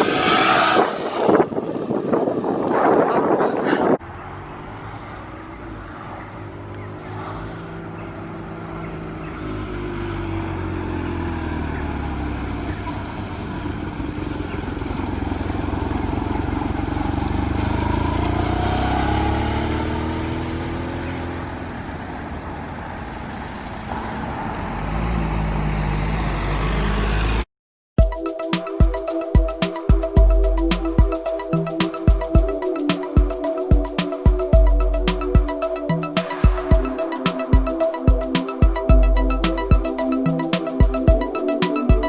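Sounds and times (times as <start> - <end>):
music with steady beat: 28.0 - 42.0.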